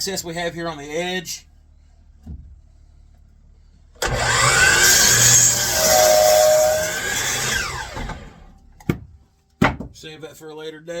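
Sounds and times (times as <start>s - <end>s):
miter saw cutting wood: 4.0s - 8.5s.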